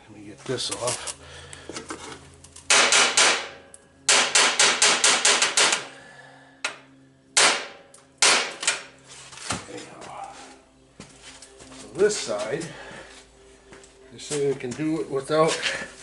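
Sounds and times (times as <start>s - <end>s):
hammer striking metal: 2.7s - 5.9s, 7.4s - 8.9s.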